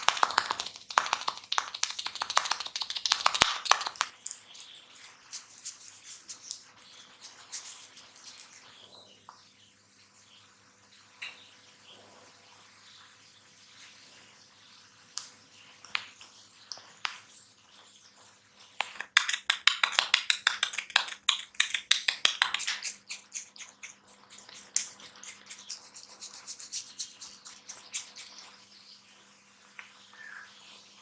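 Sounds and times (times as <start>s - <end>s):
crackling and scratching on head: 0.0s - 8.9s, 18.0s - 28.7s.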